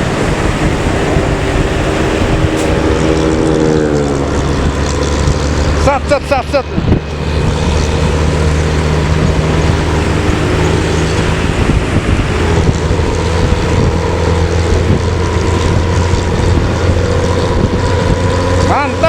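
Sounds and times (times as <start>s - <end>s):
bus diesel engine rumbling: 0.0s - 19.0s
road and wind noise: 0.0s - 19.0s.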